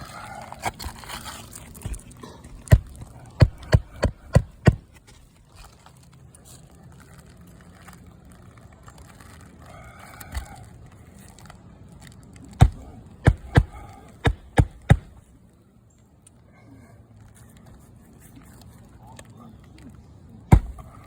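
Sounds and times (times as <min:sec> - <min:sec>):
hammer striking nails: 0:02.7 - 0:05.0, 0:12.6 - 0:15.2, 0:20.5 - 0:21.0.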